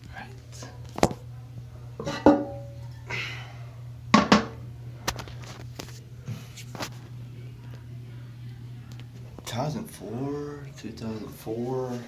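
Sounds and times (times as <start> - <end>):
porcelain lid scraping: 2.0 - 2.8
toilet tank lid clunking: 2.0 - 2.8, 4.1 - 4.6.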